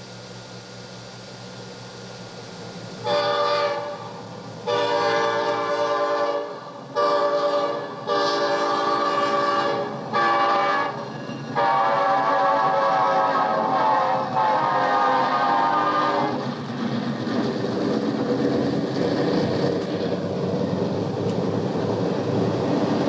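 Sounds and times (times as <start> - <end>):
tape hiss and hum: 0.0 - 7.1
train horn blasts: 3.0 - 16.4.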